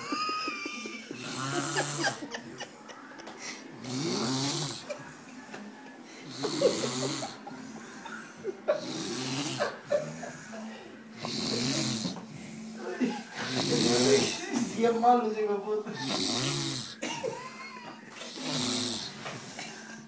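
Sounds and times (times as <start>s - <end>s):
boy snoring: 1.1s - 2.2s, 3.8s - 4.9s, 6.2s - 7.4s, 8.8s - 10.6s, 11.2s - 12.2s, 13.4s - 14.4s, 16.0s - 17.0s, 18.2s - 19.3s
quiet breathing: 3.0s - 3.9s, 4.7s - 6.5s, 7.3s - 8.7s, 9.8s - 14.9s.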